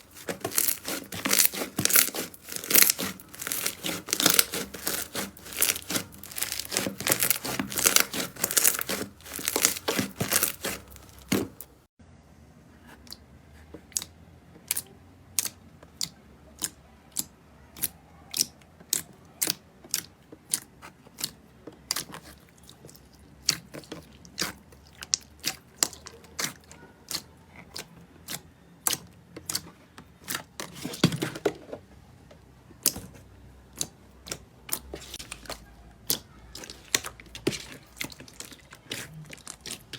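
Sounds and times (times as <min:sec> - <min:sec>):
slime crackling: 0:00.0 - 0:11.9, 0:32.8 - 0:39.9.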